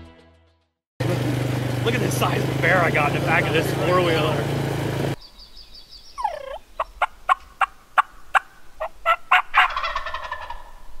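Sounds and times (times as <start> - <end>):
wild turkey calling: 5.2 - 11.0.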